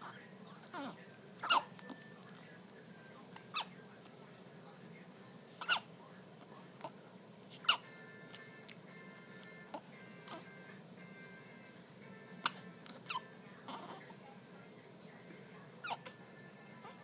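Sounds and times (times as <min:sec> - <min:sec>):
babies hiccuping: 0:00.7 - 0:01.7, 0:05.6 - 0:05.9, 0:07.6 - 0:08.0, 0:12.4 - 0:14.0, 0:15.8 - 0:16.2.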